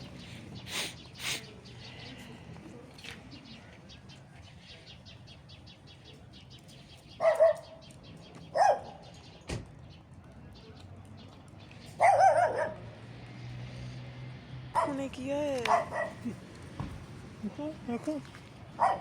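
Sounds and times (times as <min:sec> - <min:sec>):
dog barking: 0:07.2 - 0:07.8, 0:08.5 - 0:09.1, 0:12.0 - 0:12.9, 0:14.8 - 0:15.0, 0:15.6 - 0:16.3, 0:18.8 - 0:19.0.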